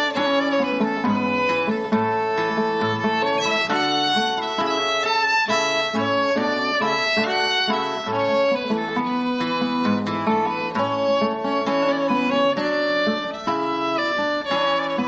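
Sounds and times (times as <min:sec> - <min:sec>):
fiddle playing folk tune: 0:00.0 - 0:15.0.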